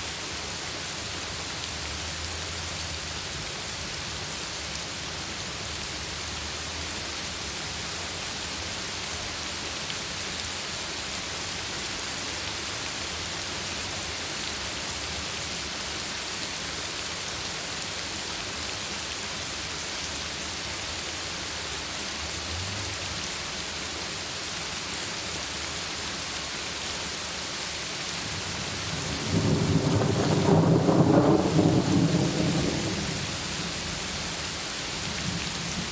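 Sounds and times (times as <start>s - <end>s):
heavy rain falling: 0.1s - 35.9s
thunder rolling: 28.7s - 34.0s.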